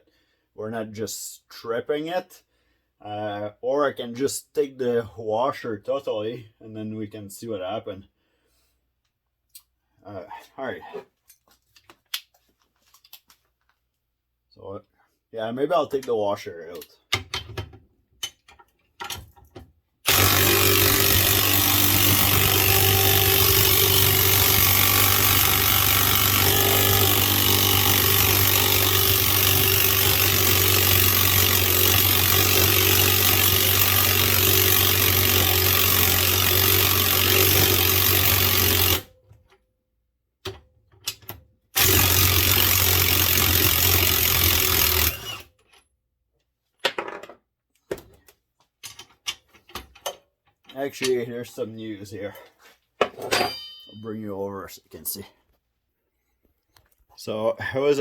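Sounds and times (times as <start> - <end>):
impact wrench hammering on bolt: 20.1 - 39.1, 41.8 - 45.3.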